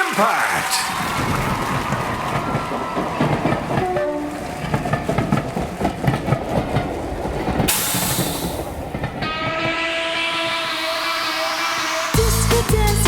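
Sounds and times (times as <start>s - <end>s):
underground train rumbling: 0.2s - 13.0s
air brakes hissing: 7.7s - 8.8s.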